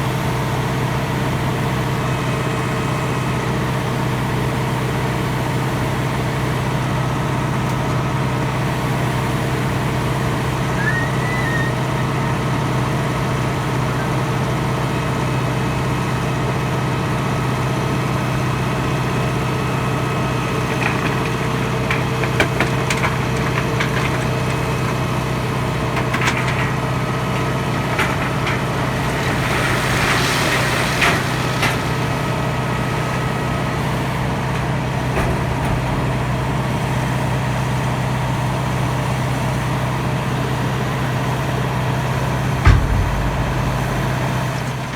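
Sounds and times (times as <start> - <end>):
tractor diesel engine running: 0.0 - 44.9
short clicks and knocks: 42.6 - 44.9.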